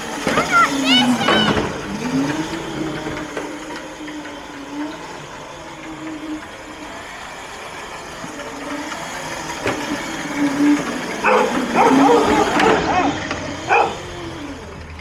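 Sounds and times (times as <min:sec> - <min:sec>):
electric motor whining: 0:00.0 - 0:15.0.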